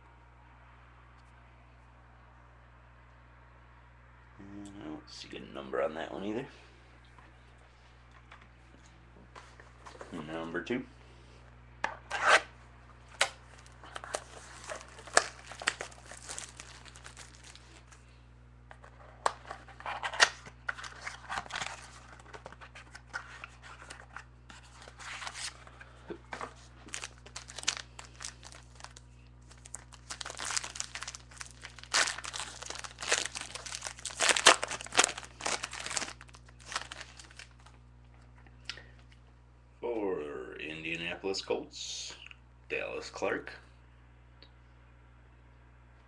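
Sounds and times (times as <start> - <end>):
faint low hum: 0.0 - 46.0
cards clicking and rustling: 13.1 - 17.9, 26.3 - 37.7
packaging tearing and crinkling: 13.2 - 18.0, 18.9 - 25.6, 26.6 - 37.8.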